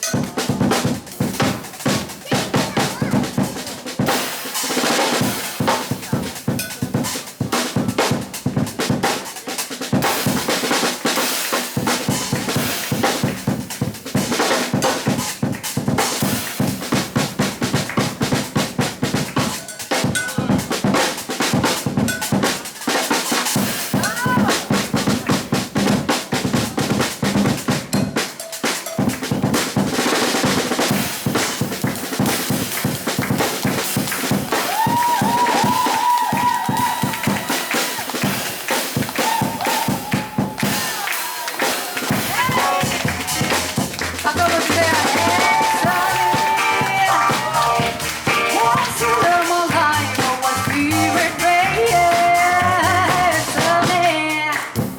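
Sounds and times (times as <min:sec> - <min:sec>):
jazz drum kit solo: 0:00.0 - 0:54.9.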